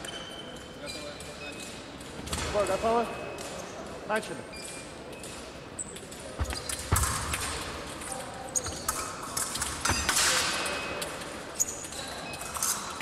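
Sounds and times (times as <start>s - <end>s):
fencers' feet thudding: 6.4s - 8.0s.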